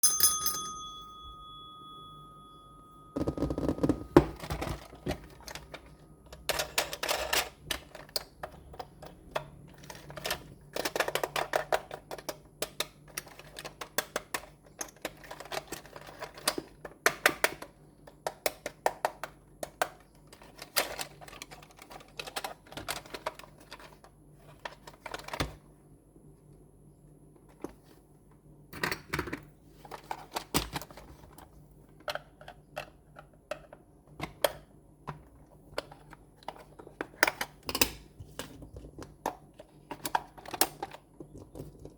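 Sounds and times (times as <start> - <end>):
faint high tone: 0.0 - 4.5
cardboard and plastic packaging rustling: 3.2 - 8.2.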